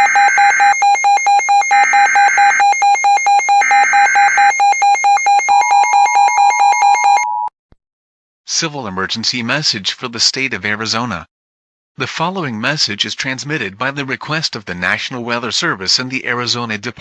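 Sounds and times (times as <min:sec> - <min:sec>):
screeching data noise: 0:00.0 - 0:06.2.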